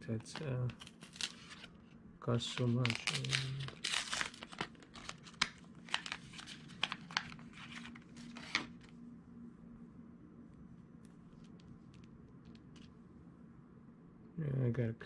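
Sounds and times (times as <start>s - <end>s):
plastic packaging crinkling: 0.2s - 1.8s, 2.4s - 8.9s.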